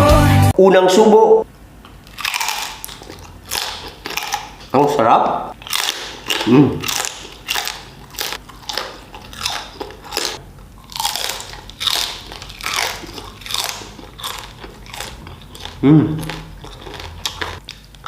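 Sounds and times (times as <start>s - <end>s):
person chewing food: 1.8s - 4.8s, 5.5s - 18.0s.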